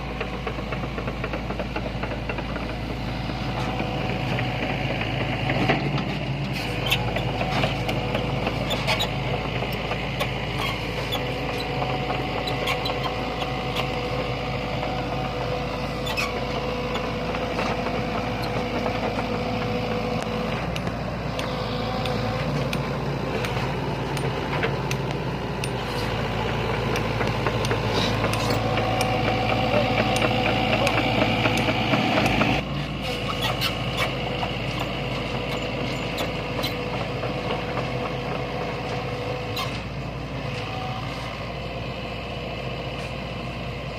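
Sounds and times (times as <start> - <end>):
excavator diesel engine working: 0.0 - 43.9.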